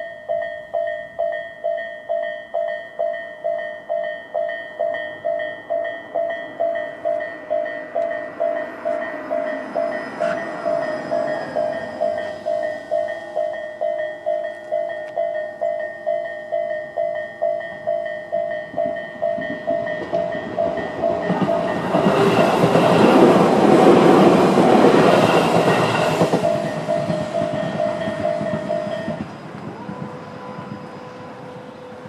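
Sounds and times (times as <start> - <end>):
level crossing bell dinging: 0.0 - 22.1
train wheels clattering: 3.9 - 16.3, 17.0 - 31.2.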